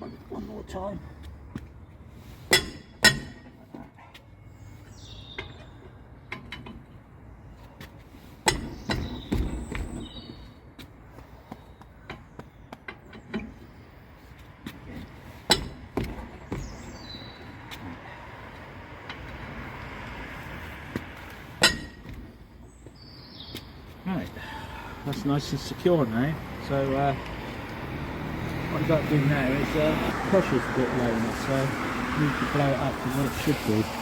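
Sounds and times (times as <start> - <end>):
metal wheel brace clinking: 5.4 - 7.0, 21.6 - 22.3
wheel brace knocking on nuts: 8.4 - 10.3, 14.6 - 16.9, 20.9 - 22.4.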